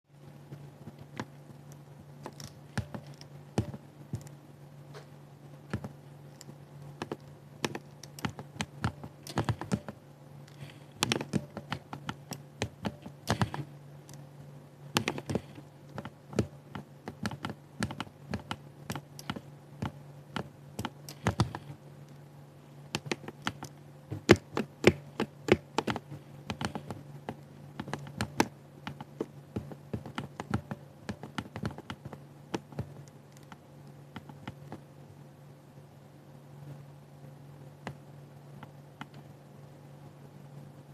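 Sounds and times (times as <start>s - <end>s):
steady low hum: 0.1s - 40.9s
keyboard keystroke clicks: 5.7s - 14.2s, 14.9s - 21.8s, 22.9s - 34.8s.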